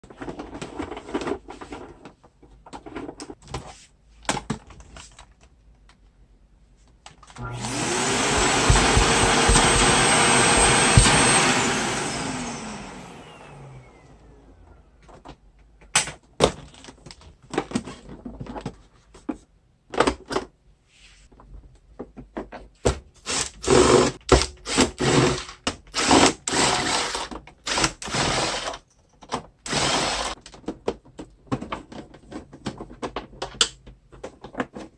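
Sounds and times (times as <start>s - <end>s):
vacuum cleaner motor: 7.4s - 14.9s, 29.7s - 30.4s.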